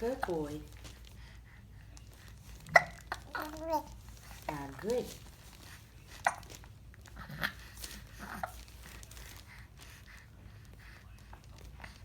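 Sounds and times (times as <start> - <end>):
child hiccuping: 2.7 - 3.8, 6.2 - 6.5.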